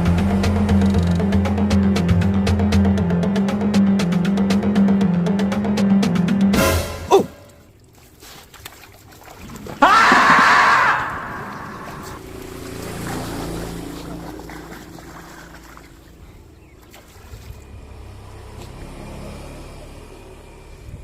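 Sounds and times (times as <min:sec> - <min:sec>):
low motor hum: 0:00.0 - 0:06.3, 0:11.2 - 0:21.0.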